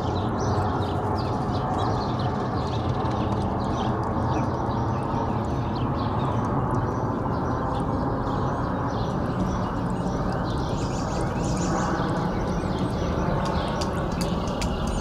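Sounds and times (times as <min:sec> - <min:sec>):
sharp clicks: 0:13.4 - 0:15.0.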